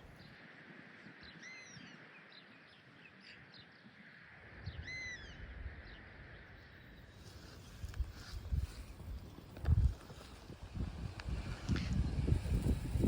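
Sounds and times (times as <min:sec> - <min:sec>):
faint bird chirps: 0:04.6 - 0:06.0.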